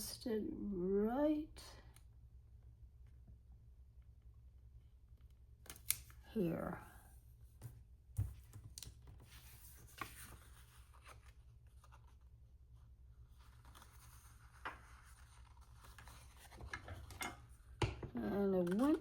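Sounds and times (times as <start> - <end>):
paper taps and rustles: 7.6 - 11.4.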